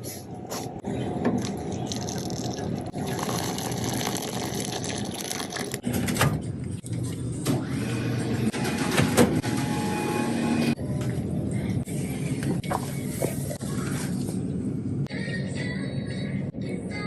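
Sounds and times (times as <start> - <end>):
water pouring into a container: 1.4 - 5.8.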